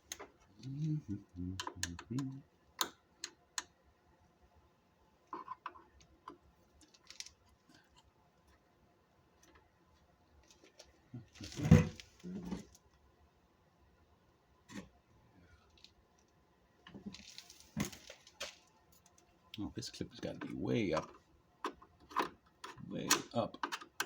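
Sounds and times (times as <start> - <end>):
small plastic and metal clicks: 21.0 - 24.0.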